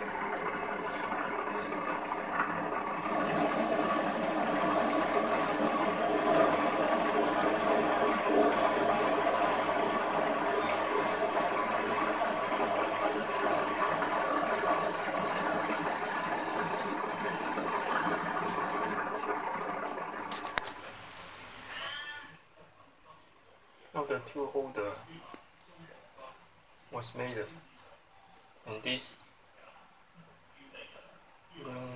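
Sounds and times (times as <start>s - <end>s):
milling machine running: 0.0s - 21.6s
high spindle whine: 0.0s - 21.7s.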